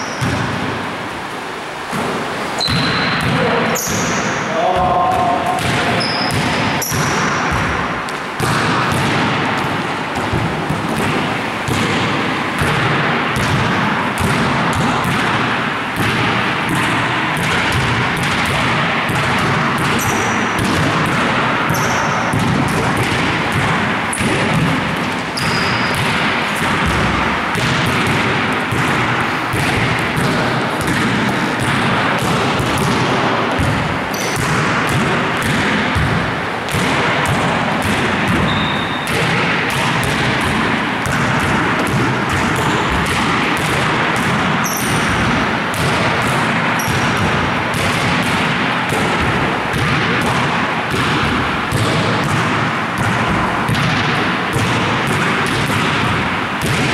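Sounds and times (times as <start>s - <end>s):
high shoe squeaks: 0.0s - 0.4s, 2.5s - 7.6s, 20.0s - 20.5s, 21.7s - 22.3s, 25.4s - 26.0s, 34.1s - 34.4s, 38.4s - 39.1s, 44.6s - 45.1s
basketballs bouncing: 0.0s - 56.9s.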